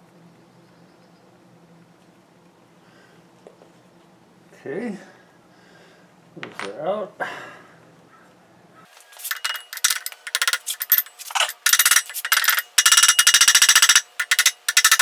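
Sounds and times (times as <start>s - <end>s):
metal parts clinking and rattling: 8.9s - 15.0s
rapid evenly spaced clicks: 9.2s - 15.0s.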